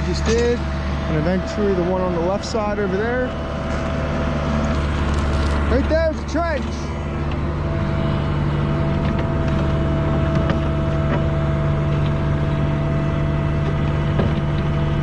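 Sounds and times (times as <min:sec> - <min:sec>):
diesel engine running: 0:00.0 - 0:15.0
steady whine: 0:00.0 - 0:15.0.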